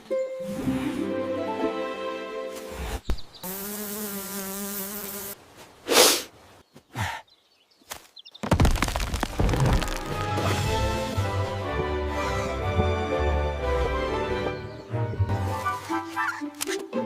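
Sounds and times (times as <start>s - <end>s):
cartoon insect buzzing: 3.4s - 5.4s.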